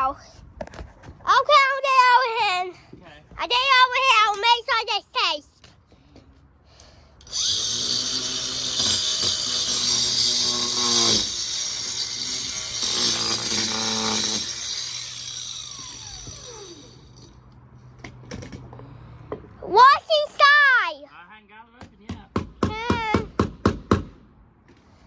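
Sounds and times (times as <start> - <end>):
battery cutting tool cutting rock: 7.2 - 17.3.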